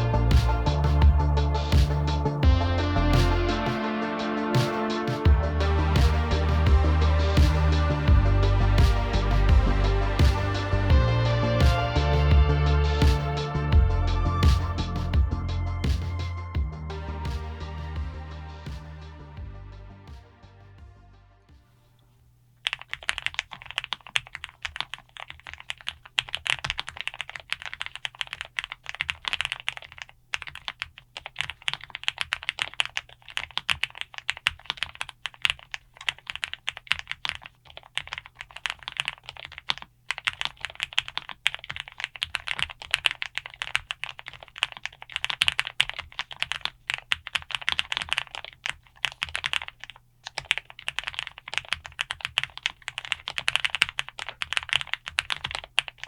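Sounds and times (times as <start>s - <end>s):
fast typing on mechanical keyboard: 22.6s - 56.0s.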